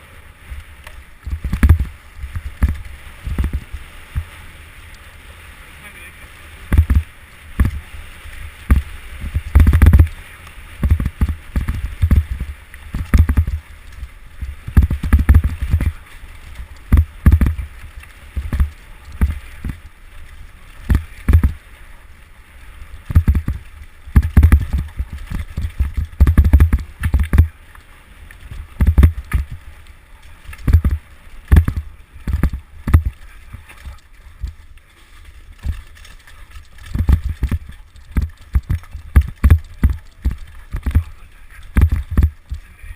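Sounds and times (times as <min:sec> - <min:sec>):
heavy thumps on microphone: 0:01.3 - 0:04.3, 0:06.7 - 0:07.8, 0:08.6 - 0:10.1, 0:10.8 - 0:13.6, 0:14.7 - 0:15.9, 0:16.9 - 0:17.6, 0:20.9 - 0:21.6, 0:23.1 - 0:23.6, 0:24.2 - 0:27.5, 0:28.8 - 0:29.6, 0:30.7 - 0:33.1, 0:41.7 - 0:42.4
bike rattling clicks: 0:35.6 - 0:42.7.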